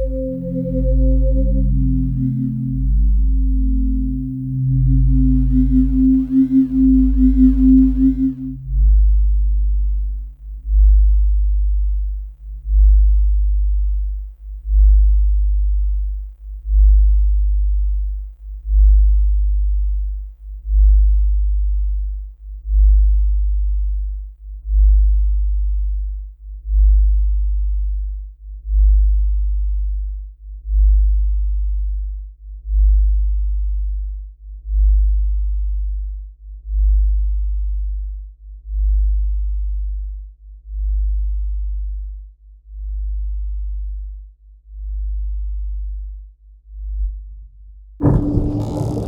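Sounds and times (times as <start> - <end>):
deep pulsing hum: 0.0 - 18.1, 48.0 - 49.0.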